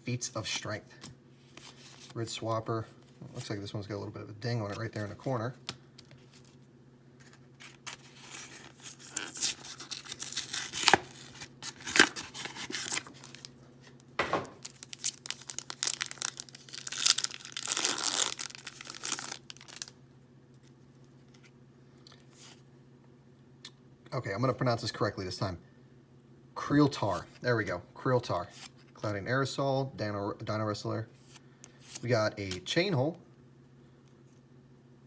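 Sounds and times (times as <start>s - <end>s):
plastic packaging tearing and crinkling: 7.3s - 13.5s, 14.5s - 20.0s.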